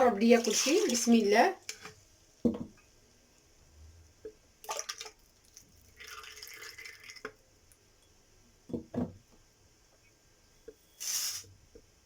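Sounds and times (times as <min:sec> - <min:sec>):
liquid pouring: 0:04.6 - 0:07.5.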